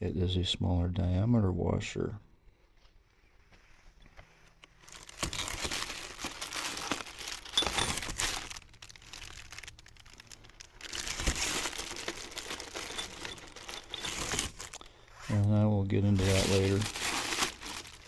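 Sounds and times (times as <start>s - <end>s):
packaging crinkling: 4.7s - 18.0s.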